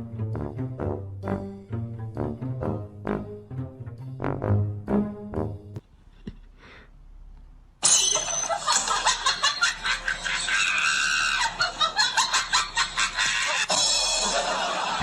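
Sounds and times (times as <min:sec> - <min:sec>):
people laughing and shrieking: 0:08.5 - 0:15.0.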